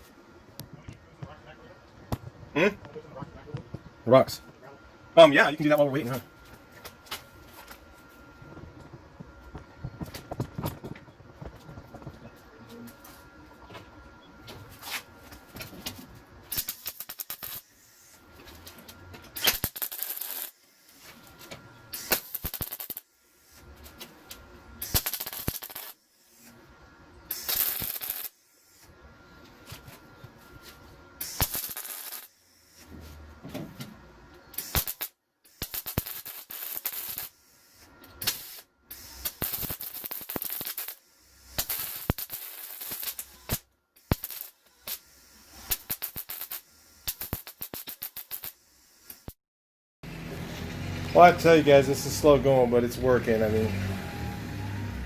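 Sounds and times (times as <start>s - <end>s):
welder crackling: 5.2s - 6.2s, 14.8s - 28.9s, 31.2s - 32.9s, 34.4s - 49.4s, 51.1s - 53.8s.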